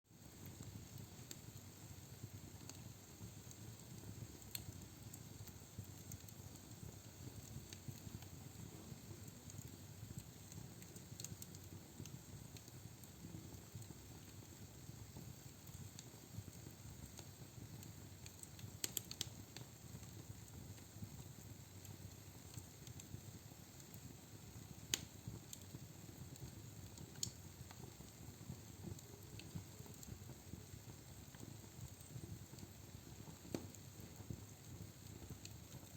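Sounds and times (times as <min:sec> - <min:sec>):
fire crackles and pops: 0:00.2 - 0:35.9.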